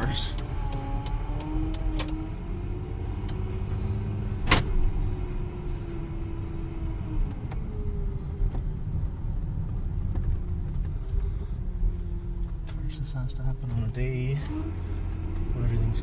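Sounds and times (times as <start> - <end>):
car rumbling grind: 0.0 - 16.0.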